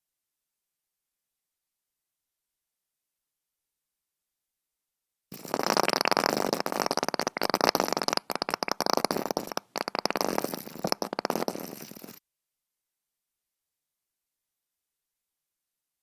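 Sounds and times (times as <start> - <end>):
sputtering fart sound: 5.3 - 12.2.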